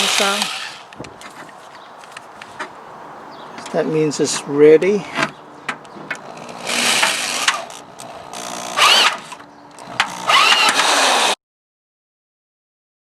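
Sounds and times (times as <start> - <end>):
electric drill motor whirring: 0.0 - 1.0, 6.1 - 11.4.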